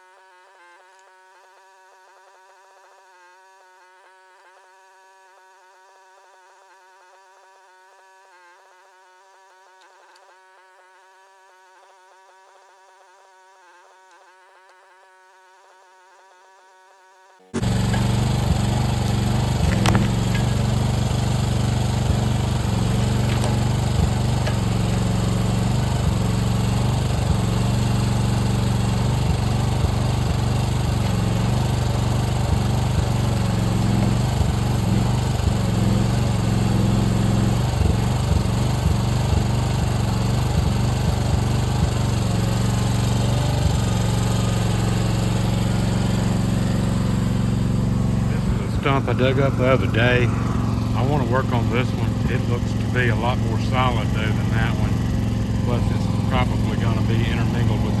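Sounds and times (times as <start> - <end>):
small excavator engine running: 17.6 - 58.0.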